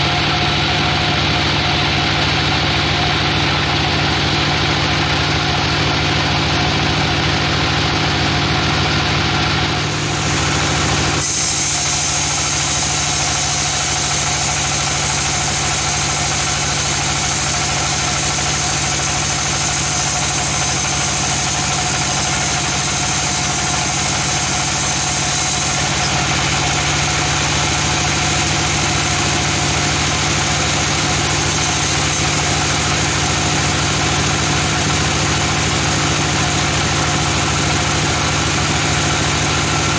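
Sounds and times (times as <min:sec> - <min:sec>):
sawmill mechanical drone: 0:00.0 - 0:39.9
saw blade cutting log: 0:10.0 - 0:26.5, 0:30.8 - 0:33.2.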